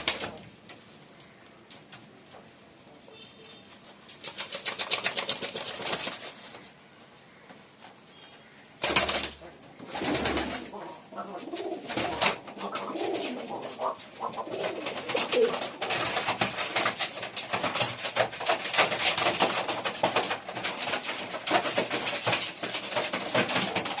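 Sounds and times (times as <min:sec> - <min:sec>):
pigeons cooing: 0:08.8 - 0:16.2.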